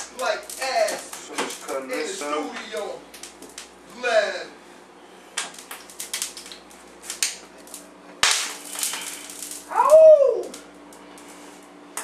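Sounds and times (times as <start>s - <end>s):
hot oil popping in a pan: 0.0s - 2.0s, 3.1s - 3.8s, 5.4s - 12.0s
man yelping: 9.7s - 10.6s.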